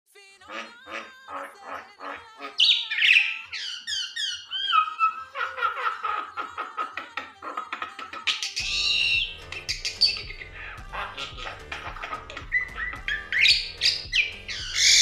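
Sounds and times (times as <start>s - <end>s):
myna bird whistling and calling: 2.5s - 5.2s, 8.3s - 15.0s.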